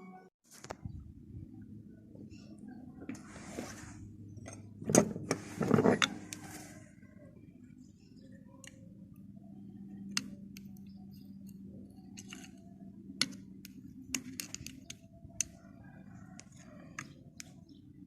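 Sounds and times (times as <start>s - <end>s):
light clicks and taps on small parts: 10.0s - 12.6s, 13.2s - 15.6s.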